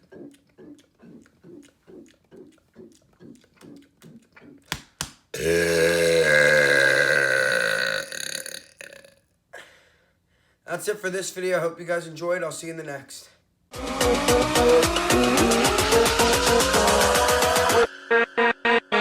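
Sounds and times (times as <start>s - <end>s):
soft rhythmic pulses: 0.0s - 4.8s
man burping loudly: 5.4s - 9.2s.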